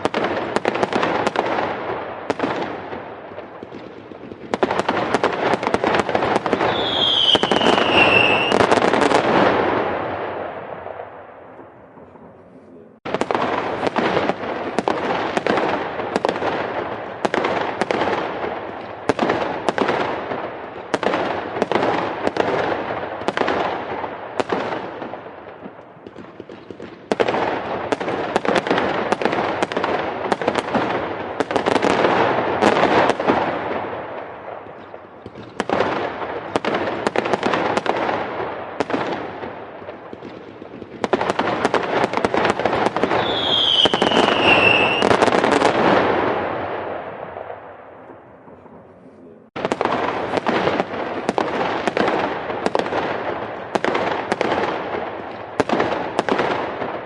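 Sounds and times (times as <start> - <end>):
fireworks crackling: 0.0 - 57.0
falling whistle: 6.6 - 8.6, 43.2 - 45.0.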